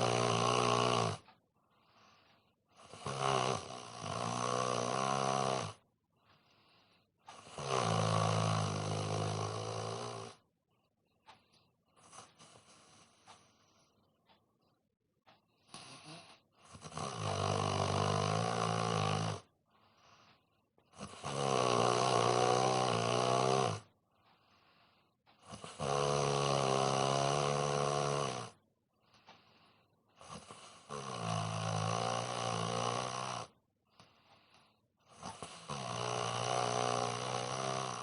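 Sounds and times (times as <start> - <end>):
man snoring: 0.0 - 5.8, 6.6 - 10.4, 15.6 - 20.3, 20.9 - 24.0, 25.4 - 28.6, 30.2 - 33.6, 34.4 - 38.0
quiet breaths: 0.0 - 38.0.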